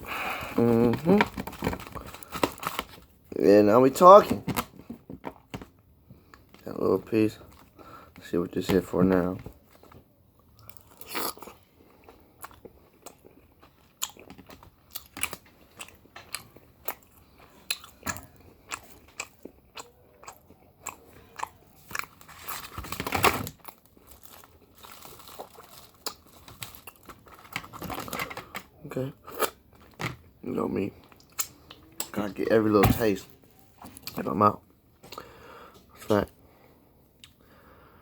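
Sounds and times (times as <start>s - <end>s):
person chewing: 9.7s - 22.6s, 23.6s - 27.4s.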